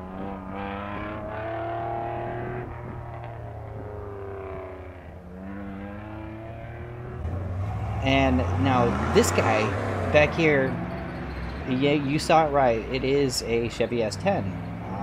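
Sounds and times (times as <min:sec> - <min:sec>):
car engine revving: 0:00.0 - 0:15.0.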